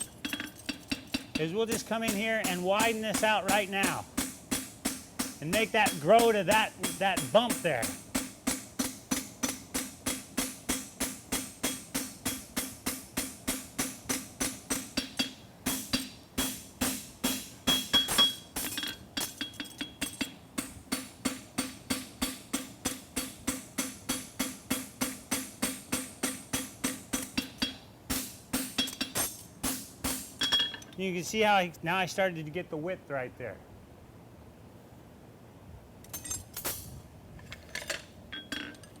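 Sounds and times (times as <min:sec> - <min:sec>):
hammer striking horseshoe on anvil: 0:00.0 - 0:30.9.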